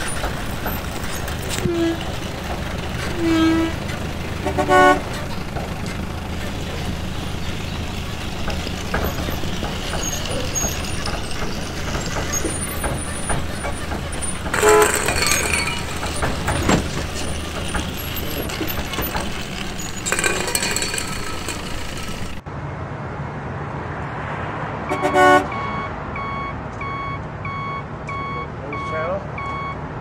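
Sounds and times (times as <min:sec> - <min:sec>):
vehicle running noise: 0:00.0 - 0:30.0.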